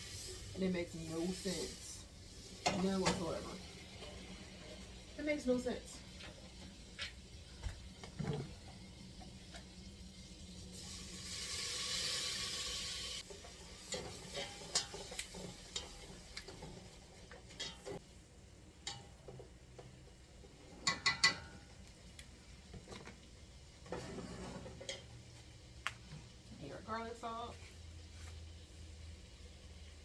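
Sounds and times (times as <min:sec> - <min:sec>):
butter sizzling in a pot: 0:00.0 - 0:30.0
utensil stirring and knocking pot: 0:13.2 - 0:18.0, 0:20.7 - 0:21.7.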